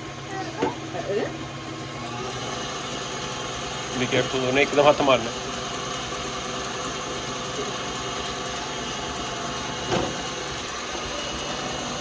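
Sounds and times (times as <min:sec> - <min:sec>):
electric mixer running: 0:00.0 - 0:12.0.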